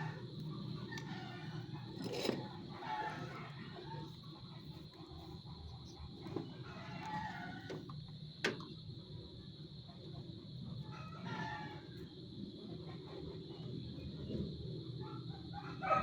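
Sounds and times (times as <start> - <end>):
rooster crowing: 15.7 - 16.0.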